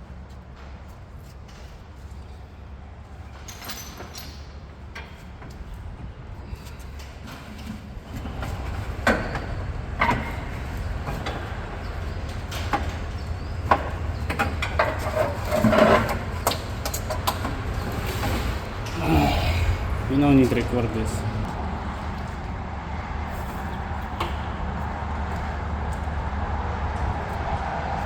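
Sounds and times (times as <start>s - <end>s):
knocks and clanks on metal: 7.2s - 19.0s
steady low rumble: 7.9s - 28.0s.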